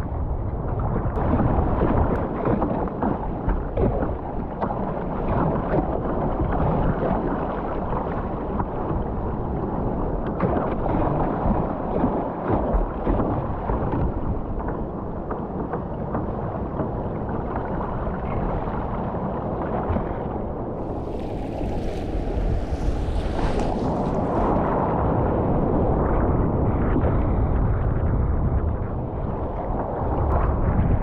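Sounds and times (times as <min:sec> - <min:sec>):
wind rumbling on microphone: 0:00.0 - 0:31.0
rough sea water splashing: 0:20.7 - 0:27.3.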